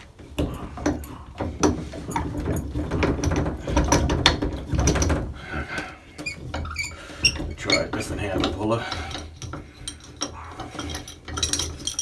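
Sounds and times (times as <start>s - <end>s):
metal puller clicking and rattling: 6.4s - 12.0s.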